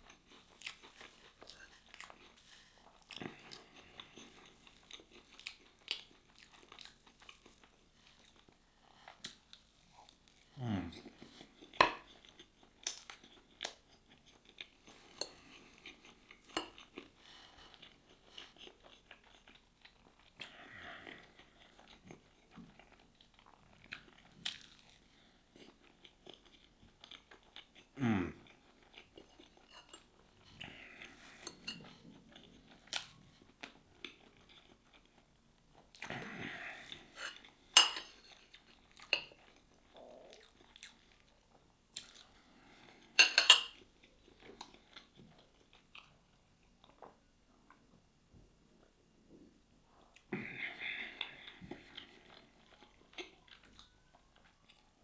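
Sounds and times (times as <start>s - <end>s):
person chewing and crunching food: 0.0s - 48.0s, 48.7s - 55.0s.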